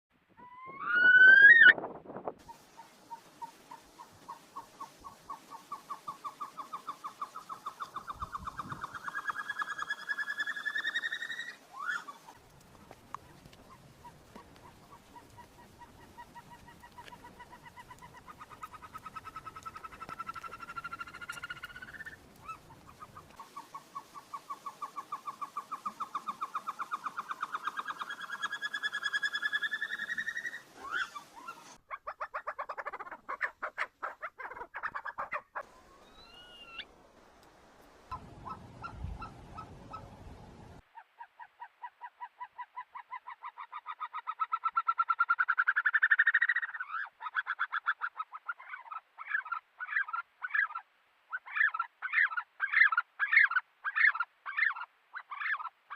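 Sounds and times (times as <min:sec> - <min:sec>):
bird calling rapid pulsed notes: 0:05.0 - 0:12.2, 0:14.9 - 0:31.7, 0:35.6 - 0:36.9
fast clicking bird notes: 0:12.5 - 0:23.4.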